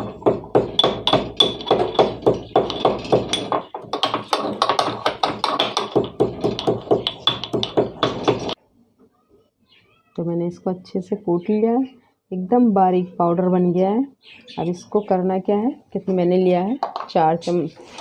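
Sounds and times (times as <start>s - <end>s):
pestle pounding in a mortar: 0.0s - 8.6s.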